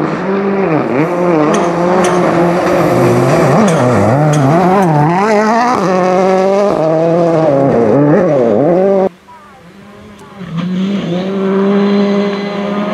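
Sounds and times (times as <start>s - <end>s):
car engine accelerating hard: 0.0s - 12.9s.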